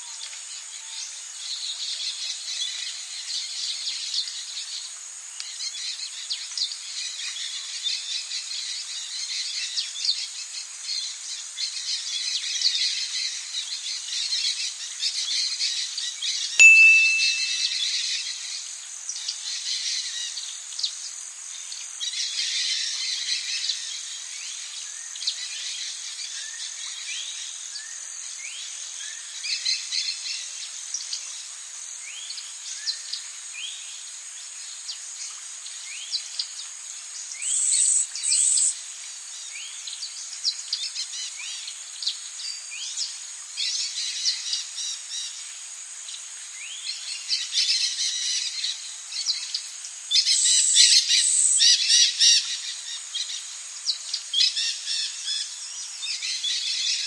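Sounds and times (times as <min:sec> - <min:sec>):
birds chirping: 0:16.6 - 0:18.0.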